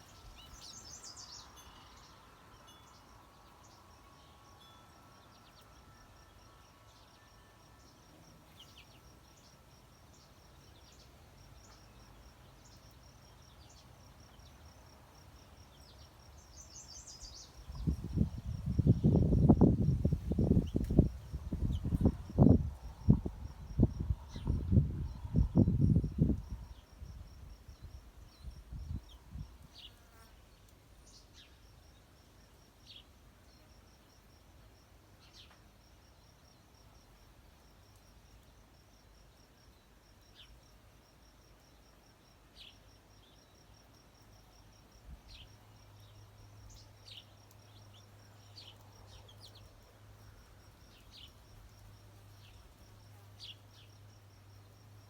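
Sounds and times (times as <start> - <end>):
pulsing insect trill: 0.0 - 30.3.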